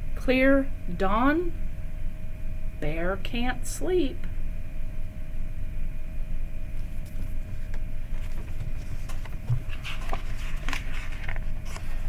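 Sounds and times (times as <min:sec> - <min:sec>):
low room hum: 0:00.0 - 0:12.0
faint clicks and rustles: 0:06.8 - 0:12.0.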